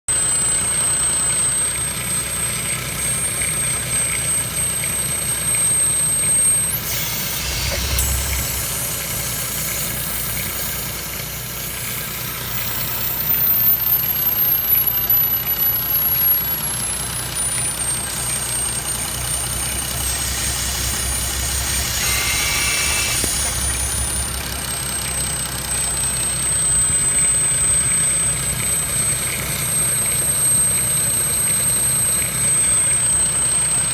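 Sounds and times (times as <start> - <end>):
car engine idling: 0.1 - 33.9
high-pitched whistle under hood: 0.1 - 33.9.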